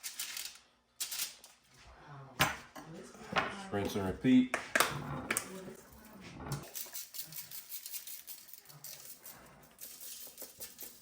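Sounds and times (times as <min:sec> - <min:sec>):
seasoning shaker patter: 0:06.6 - 0:11.0.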